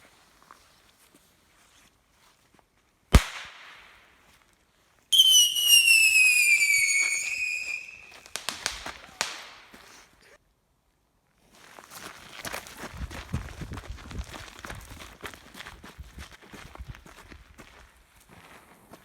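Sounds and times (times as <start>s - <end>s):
sharp firework cracks: 3.1s - 4.0s, 5.2s - 10.0s
firecracker bang: 3.2s - 3.7s
whistling firework screeching: 5.2s - 9.4s.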